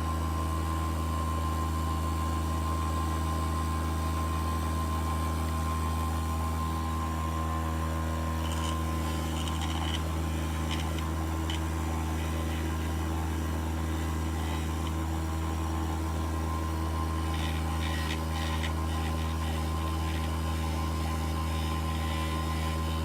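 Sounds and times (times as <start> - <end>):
bench grinder motor humming: 2.6 - 23.0
metal scratching on grinder wheel: 8.3 - 23.0.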